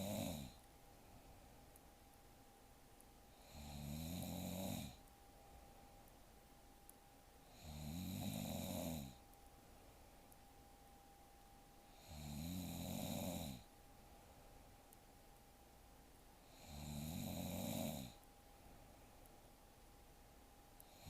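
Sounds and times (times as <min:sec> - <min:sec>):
woman snoring: 0:00.0 - 0:00.6, 0:03.3 - 0:05.0, 0:07.4 - 0:09.2, 0:11.9 - 0:13.7, 0:16.4 - 0:18.2
quiet breathing: 0:00.0 - 0:21.0.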